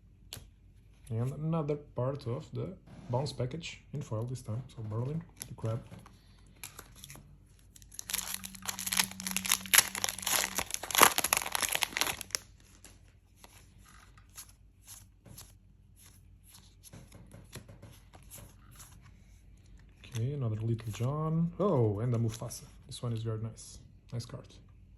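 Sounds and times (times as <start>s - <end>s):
wrapper crinkling and tearing: 6.6s - 14.5s.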